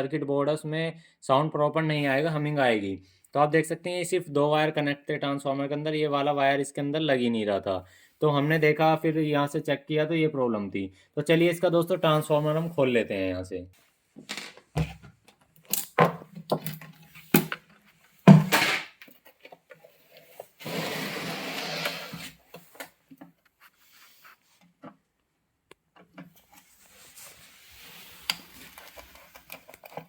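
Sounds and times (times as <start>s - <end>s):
scraping tearing sound: 20.4s - 22.4s.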